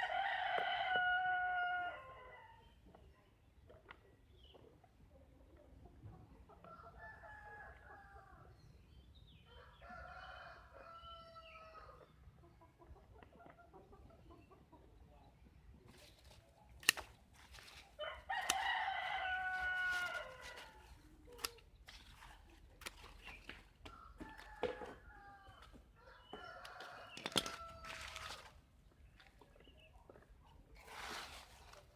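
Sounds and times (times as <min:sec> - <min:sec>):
rooster crowing: 0:00.0 - 0:02.5, 0:18.0 - 0:20.9, 0:23.9 - 0:28.3.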